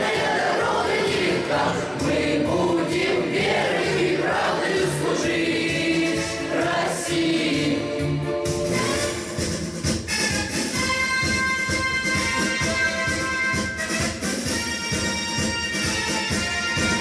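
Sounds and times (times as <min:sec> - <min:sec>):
choir singing march: 0:00.0 - 0:09.3
instrumental backing: 0:00.0 - 0:17.0.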